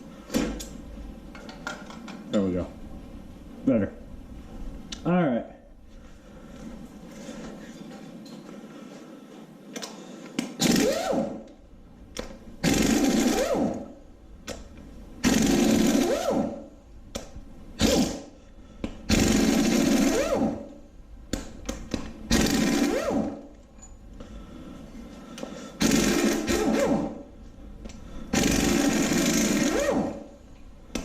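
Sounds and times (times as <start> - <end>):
impact wrench bursts: 10.5 - 11.6, 12.6 - 14.0, 15.2 - 16.7, 17.8 - 18.4, 19.0 - 20.8, 21.7 - 23.6, 25.8 - 27.3, 28.3 - 31.0.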